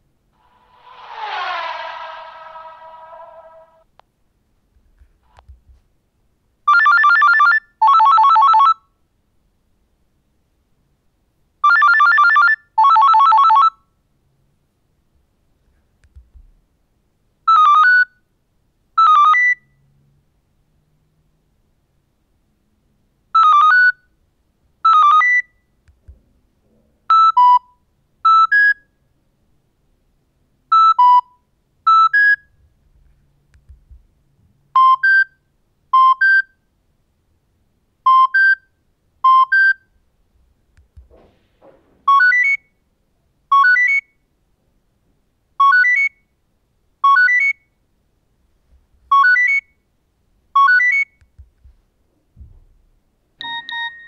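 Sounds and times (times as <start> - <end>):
phone message alert beeps: 53.4 - 54.0.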